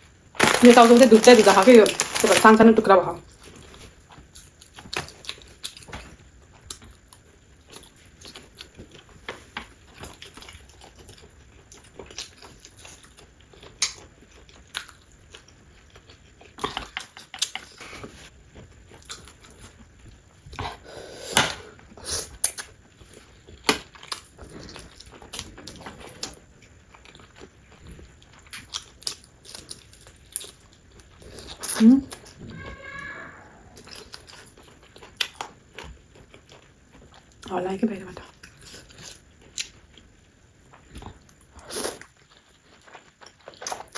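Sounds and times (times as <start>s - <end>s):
chewing food: 3.3s - 20.9s, 21.7s - 43.9s.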